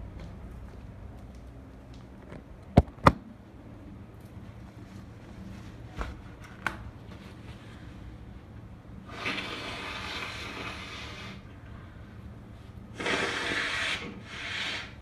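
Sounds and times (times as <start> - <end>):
steady low rumble: 0.0 - 5.5.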